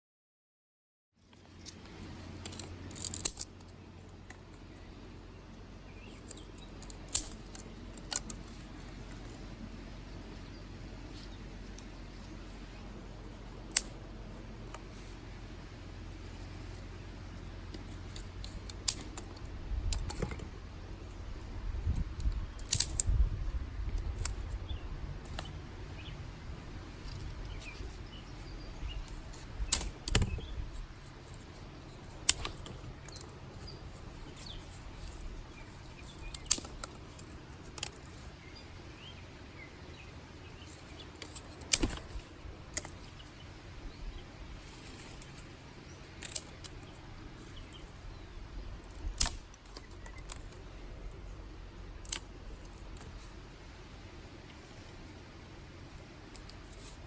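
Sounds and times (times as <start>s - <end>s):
dry sticks snapping: 1.3s - 5.0s, 5.9s - 9.4s, 11.0s - 15.2s, 16.3s - 26.1s, 27.0s - 38.3s, 40.6s - 43.4s, 44.6s - 48.1s, 48.8s - 53.4s
birds chirping: 1.3s - 57.0s.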